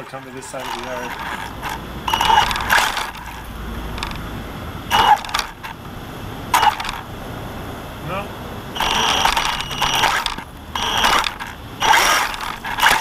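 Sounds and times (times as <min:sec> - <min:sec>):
steady drivetrain whir: 0:00.0 - 0:13.0
electric motor whining bursts: 0:00.5 - 0:04.3, 0:04.9 - 0:05.8, 0:06.5 - 0:07.1, 0:08.7 - 0:13.0.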